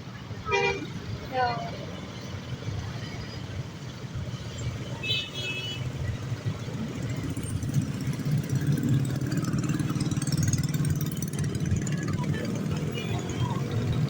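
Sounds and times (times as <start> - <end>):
bus engine rumbling: 0.0 - 14.0.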